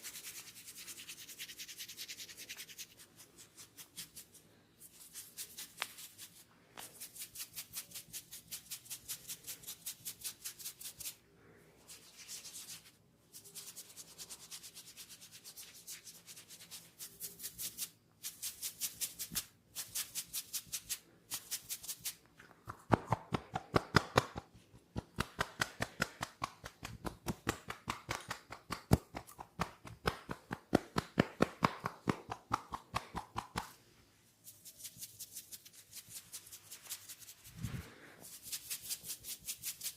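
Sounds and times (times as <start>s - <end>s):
hands rubbing hair: 0.0s - 11.2s, 11.8s - 39.9s.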